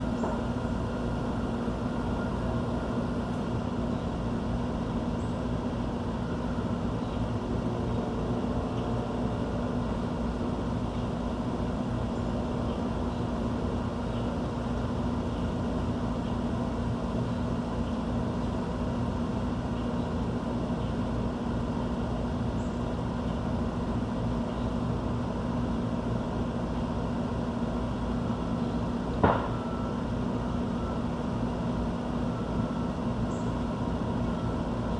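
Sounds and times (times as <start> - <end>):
low machine hum and rumble: 0.0 - 34.9
sharp knock: 29.2 - 29.6
faint high bird chirps: 32.4 - 33.6.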